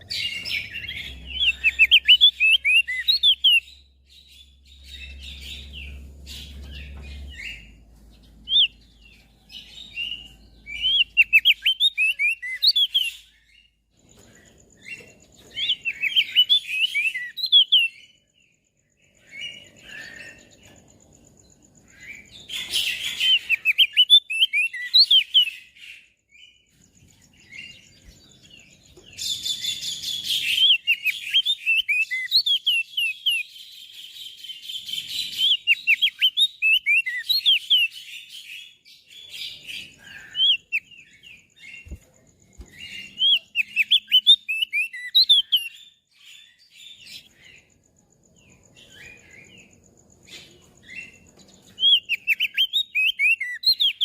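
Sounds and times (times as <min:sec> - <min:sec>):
bird singing high chirping notes: 0:00.0 - 0:13.8, 0:15.6 - 0:18.1, 0:27.3 - 0:33.6, 0:42.6 - 0:47.4, 0:50.9 - 0:54.0.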